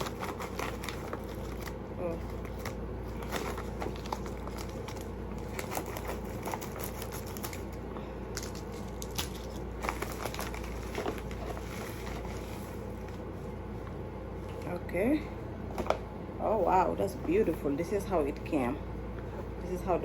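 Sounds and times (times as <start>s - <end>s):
packaging crinkling and rustling: 0.0s - 13.5s
steady low hum: 0.0s - 20.0s.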